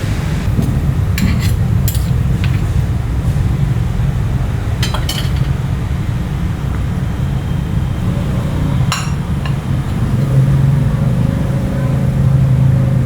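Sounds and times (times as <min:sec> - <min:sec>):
short clinks: 0:01.2 - 0:02.8, 0:04.8 - 0:05.6.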